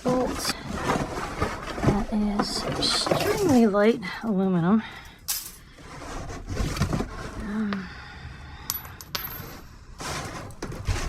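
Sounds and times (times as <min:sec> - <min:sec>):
scrap metal clinking and clattering: 0:05.3 - 0:05.8, 0:08.7 - 0:11.0.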